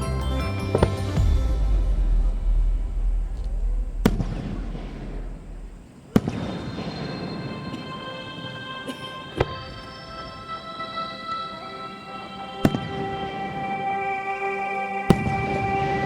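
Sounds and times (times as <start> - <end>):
fireworks rumbling booms: 1.2 - 7.0
fireworks sharp bangs: 1.2 - 7.3.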